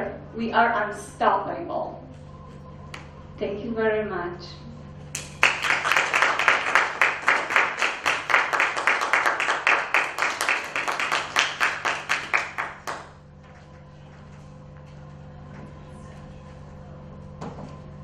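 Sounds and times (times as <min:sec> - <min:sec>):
audience applauding: 0:05.2 - 0:13.2.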